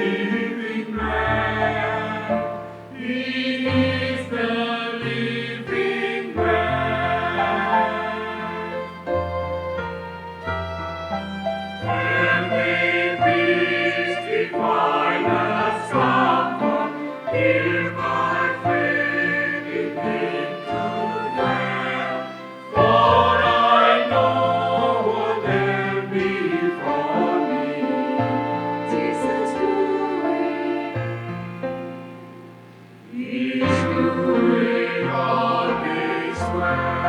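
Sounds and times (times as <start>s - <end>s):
choir singing a hymn: 0.0s - 37.0s
low instrumental accompaniment: 5.8s - 32.9s.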